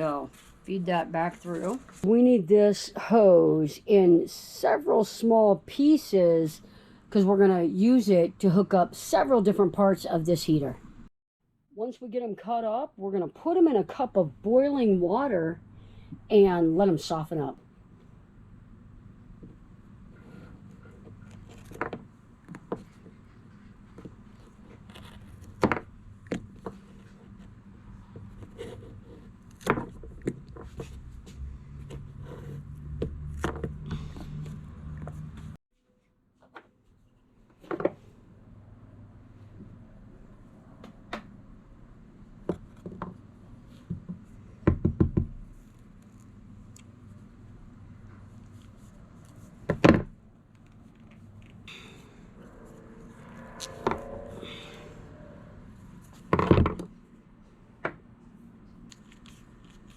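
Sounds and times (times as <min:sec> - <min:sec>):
low steady hum: 0:45.3 - 0:59.9.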